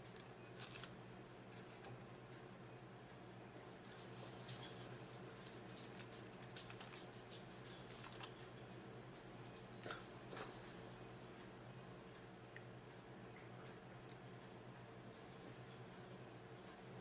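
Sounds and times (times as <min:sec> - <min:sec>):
crackly clicks and smacks: 0:05.6 - 0:08.6.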